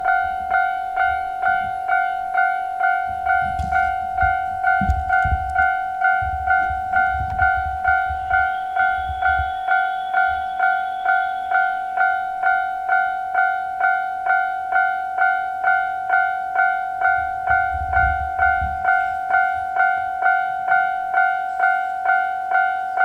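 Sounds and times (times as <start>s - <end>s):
level crossing alarm bell ringing: 0.0s - 23.0s
low rumble: 17.1s - 20.2s.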